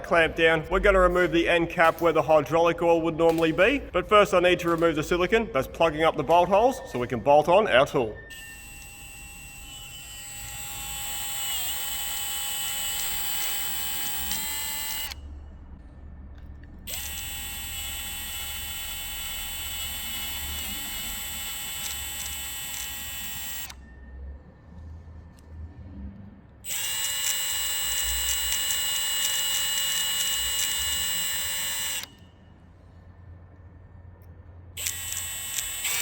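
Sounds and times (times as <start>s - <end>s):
handheld power tool whining: 8.3s - 15.2s, 16.9s - 23.8s, 26.6s - 32.2s, 34.8s - 36.0s.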